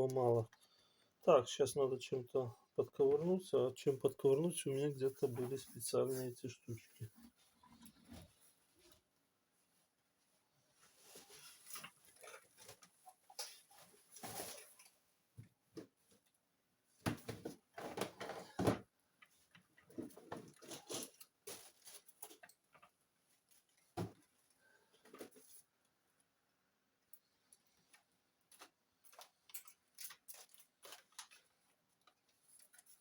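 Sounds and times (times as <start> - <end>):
rummaging through small tools: 17.2 - 23.0, 28.5 - 33.0.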